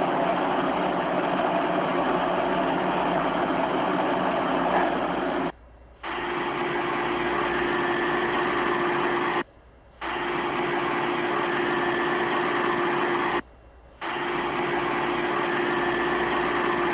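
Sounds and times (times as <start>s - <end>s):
machine hum and hiss: 0.0s - 16.9s.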